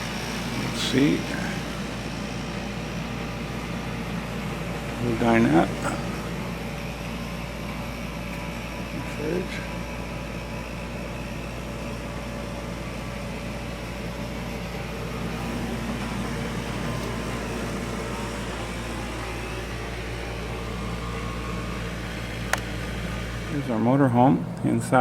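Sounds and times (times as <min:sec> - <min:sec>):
machine hum: 0:00.0 - 0:25.0.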